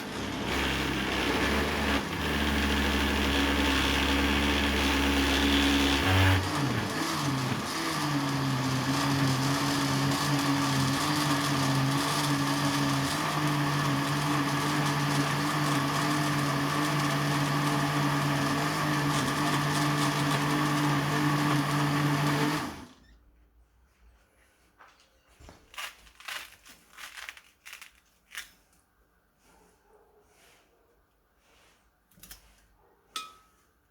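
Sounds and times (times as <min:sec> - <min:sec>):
kitchen blender running: 0:00.0 - 0:23.0.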